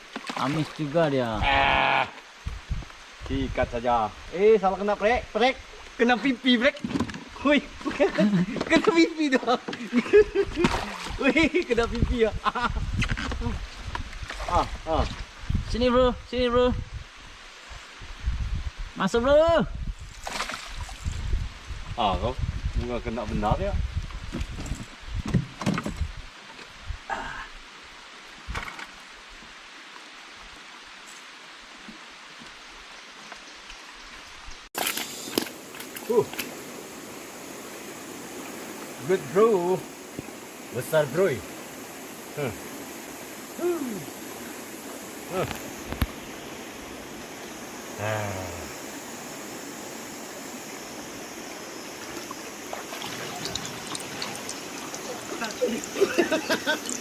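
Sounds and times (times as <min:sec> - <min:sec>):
river water rushing: 0:34.8 - 0:57.0.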